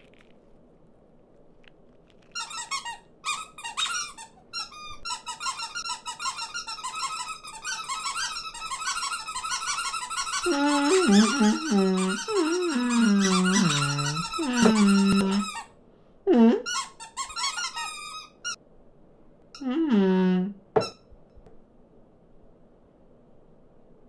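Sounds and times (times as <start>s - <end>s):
cartoon birds squeaking: 2.3s - 15.6s
low gliding cry: 10.5s - 15.5s.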